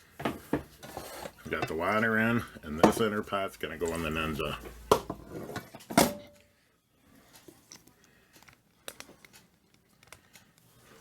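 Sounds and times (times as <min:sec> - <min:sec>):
faint clicks and taps: 0:07.3 - 0:11.0.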